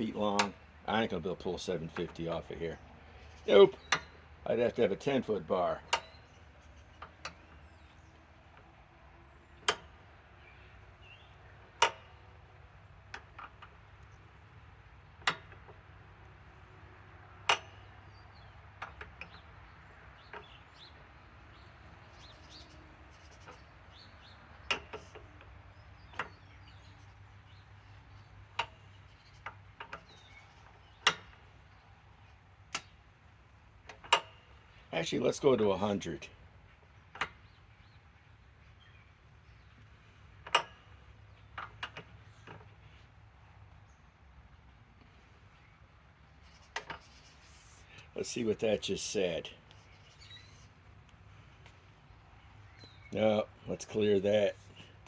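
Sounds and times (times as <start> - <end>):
sharp clicks and knocks: 5.9 - 6.2, 15.2 - 15.8, 37.1 - 37.4, 40.4 - 42.8, 46.4 - 48.1.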